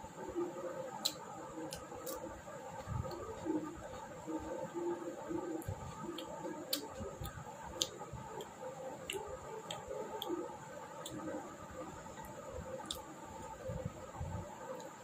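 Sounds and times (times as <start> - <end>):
wet mouth clicks: 1.0 - 2.3, 5.6 - 11.3, 12.8 - 13.1
person chewing food: 1.0 - 3.7, 5.4 - 11.4, 12.1 - 13.6.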